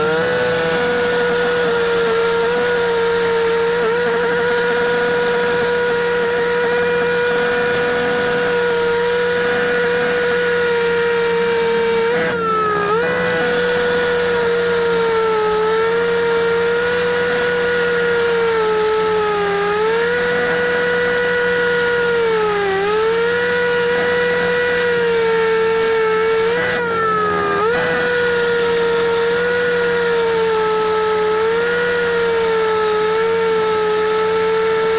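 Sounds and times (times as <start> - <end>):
concrete saw whining: 0.0 - 34.9.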